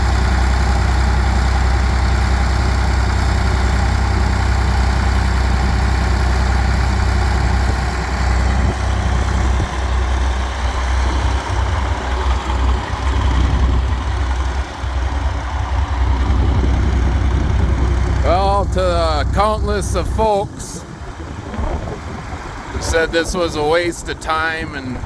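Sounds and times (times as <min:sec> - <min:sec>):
bulldozer diesel engine idling: 0:00.0 - 0:25.0.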